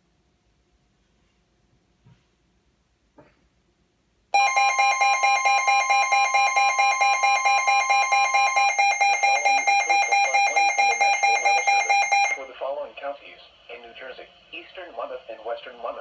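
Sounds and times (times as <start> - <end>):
pulsing electronic alert tones: 4.4 - 12.4.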